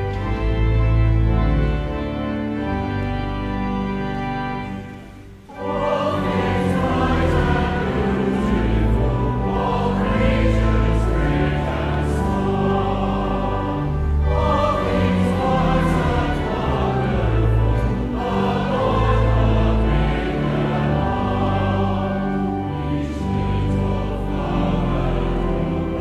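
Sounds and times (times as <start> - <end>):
choir singing sustained chords: 0.0 - 26.0.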